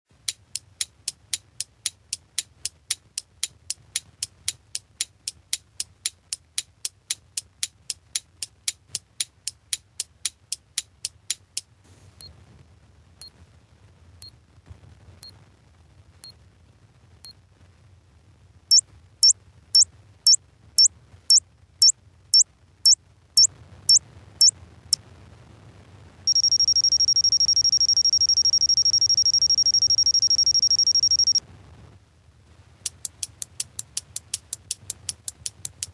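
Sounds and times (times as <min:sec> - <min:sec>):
clock ticking: 0:00.1 - 0:12.3, 0:26.3 - 0:31.4
high-pitched alarm clock tone: 0:26.3 - 0:31.4.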